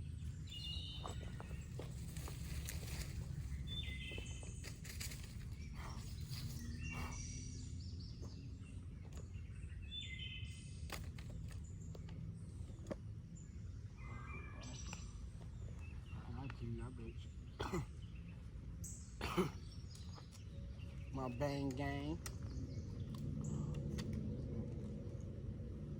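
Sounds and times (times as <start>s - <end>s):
birds chirping: 0.0s - 25.9s
steady low rumble: 0.0s - 25.9s.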